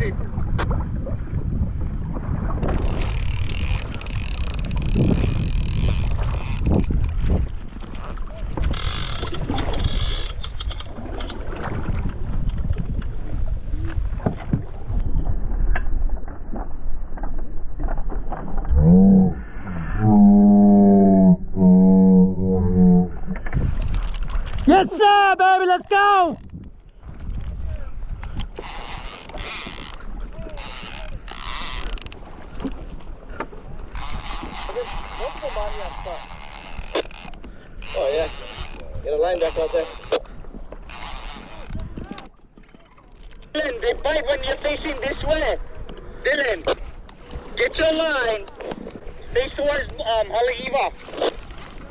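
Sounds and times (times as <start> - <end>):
wind noise: 0.0 - 20.1, 22.2 - 24.9, 25.8 - 42.3
water noise: 0.0 - 51.9
clicks and knocks from kayak: 0.5 - 1.0, 2.1 - 18.8, 23.3 - 24.7, 25.7 - 51.9
fishing reel whirring: 2.6 - 7.3, 8.6 - 11.2, 25.8 - 26.7, 28.5 - 32.4, 33.8 - 43.0
low moaning tone: 18.6 - 23.5.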